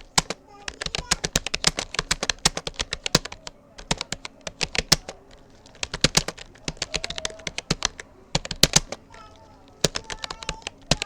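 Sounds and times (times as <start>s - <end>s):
keyboard typing clicks: 0.0s - 11.0s.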